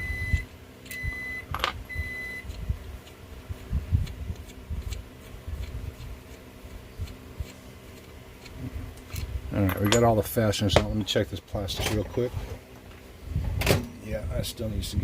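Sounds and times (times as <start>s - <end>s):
metal molds knocking and clicking: 9.1s - 10.1s.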